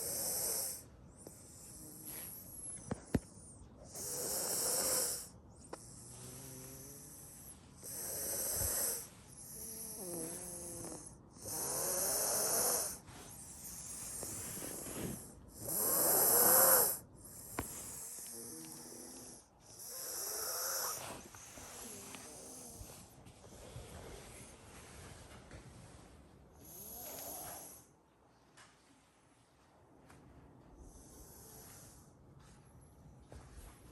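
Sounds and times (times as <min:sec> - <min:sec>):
loud rasping snore: 0:00.0 - 0:00.8, 0:03.9 - 0:22.9, 0:26.6 - 0:27.8
soft breath with faint whistle: 0:00.0 - 0:10.1.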